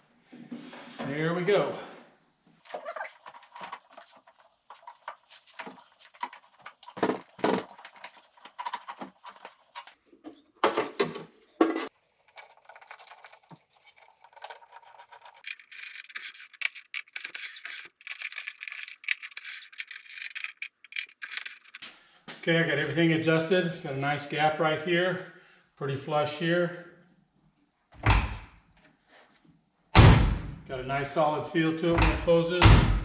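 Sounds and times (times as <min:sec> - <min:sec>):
scratching and rubbing: 0:02.6 - 0:10.0, 0:11.9 - 0:21.8.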